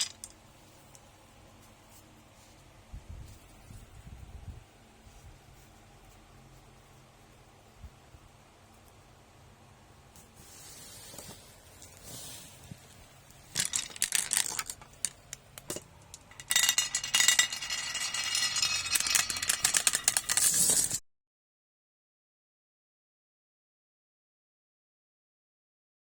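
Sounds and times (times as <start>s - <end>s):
marbles rolling and clattering: 0.0s - 0.4s, 13.5s - 21.0s.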